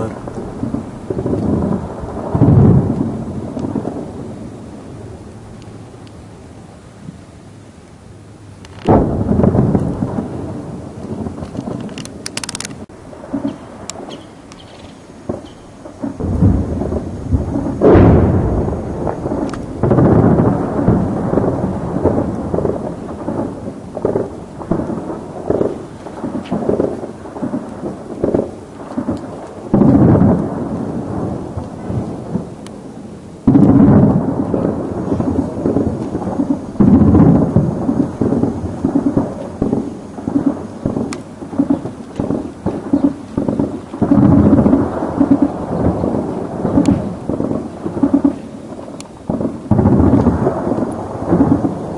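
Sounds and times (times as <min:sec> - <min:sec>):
shelling booms: 0:00.0 - 0:07.2, 0:08.7 - 0:51.9
distant automatic gunfire: 0:38.3 - 0:48.4.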